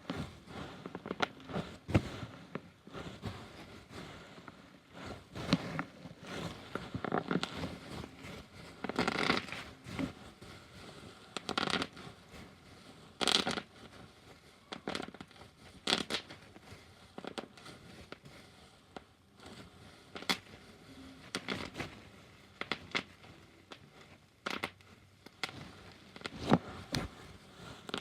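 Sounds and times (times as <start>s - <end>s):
bubble wrap popping: 4.9s - 10.4s, 11.3s - 12.6s, 13.2s - 18.2s, 20.1s - 28.0s.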